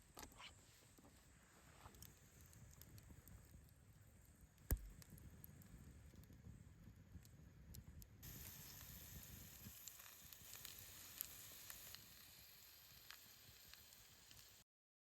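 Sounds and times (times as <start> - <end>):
campfire crackling pops: 1.9 - 14.6
food sizzling in a pan: 8.2 - 14.7.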